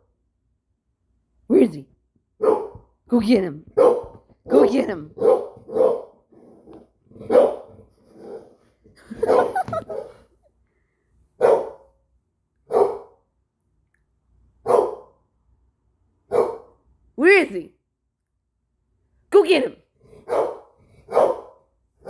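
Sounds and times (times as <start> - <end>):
dog barking: 2.4 - 2.9, 3.7 - 8.5, 9.1 - 10.3, 11.4 - 12.0, 12.7 - 13.2, 14.6 - 15.2, 16.3 - 16.8, 20.2 - 21.7.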